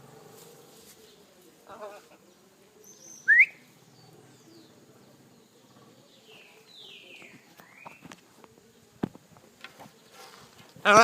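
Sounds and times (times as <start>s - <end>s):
faint whistled bird calls: 2.8s - 4.7s.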